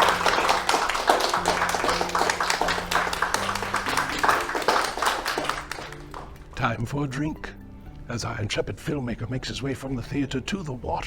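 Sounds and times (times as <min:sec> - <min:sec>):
audience applauding: 0:00.0 - 0:06.6
low sustained music notes: 0:00.0 - 0:11.0.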